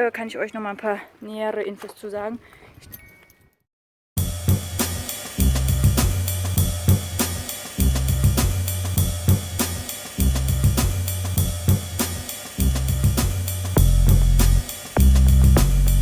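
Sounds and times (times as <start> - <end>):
deep bass line: 4.2 - 4.8, 5.4 - 7.2, 7.8 - 9.6, 10.2 - 11.9, 12.6 - 16.0
cymbal: 4.2 - 16.0
hi-hat: 4.2 - 16.0
snare drum: 4.5 - 16.0.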